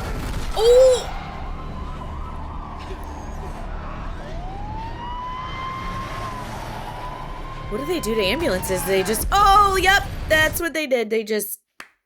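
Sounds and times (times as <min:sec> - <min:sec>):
ambulance siren wailing: 0:01.0 - 0:10.6.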